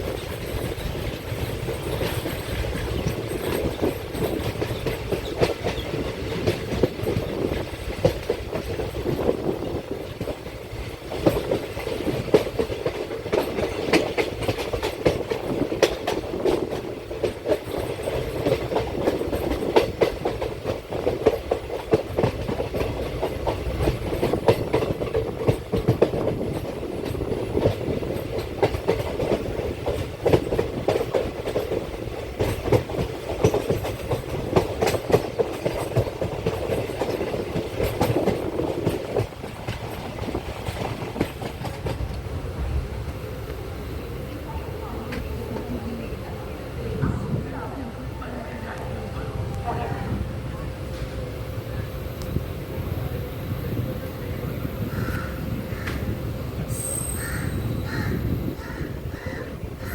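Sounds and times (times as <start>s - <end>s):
wheels clacking over rail joints: 0.0s - 47.2s
train coach rumbling: 0.0s - 59.9s.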